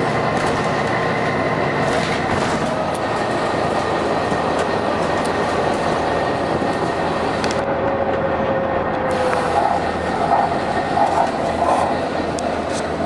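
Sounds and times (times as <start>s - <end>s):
bus engine and road noise: 0.0s - 13.0s.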